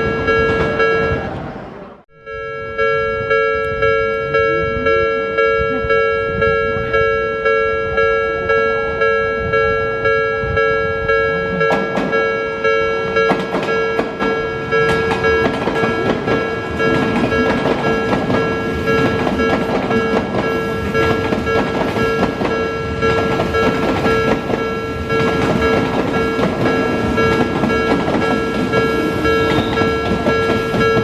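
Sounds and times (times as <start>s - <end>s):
level crossing alarm bell: 0.0s - 1.4s, 2.1s - 31.0s
train wheels clattering: 11.6s - 12.3s, 13.2s - 31.0s.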